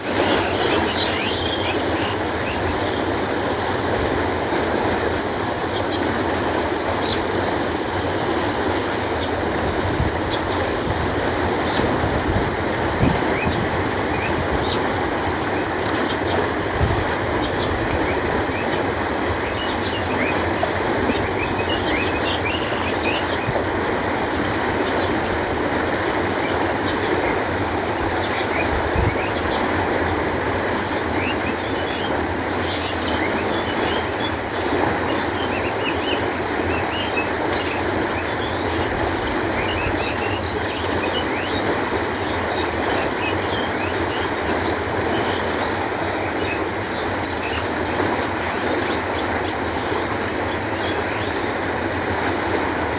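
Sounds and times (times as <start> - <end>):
water flowing: 0.0 - 52.9.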